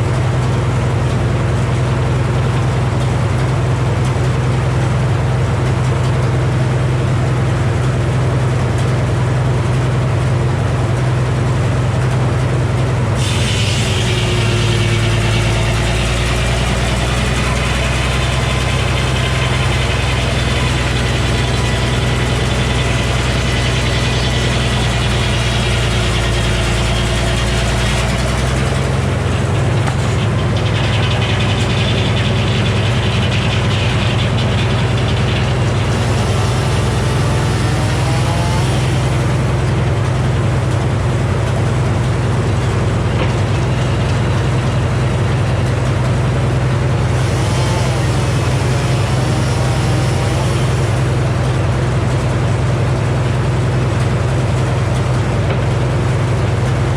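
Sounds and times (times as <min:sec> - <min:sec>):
sawmill engine running: 0:00.0 - 0:56.9
saw blade cutting whine: 0:13.1 - 0:55.6.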